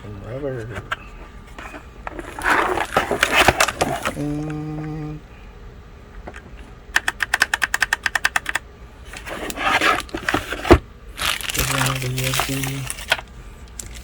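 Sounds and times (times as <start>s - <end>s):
steady hum: 0.0s - 14.0s
keyboard keys clicking: 6.9s - 8.6s.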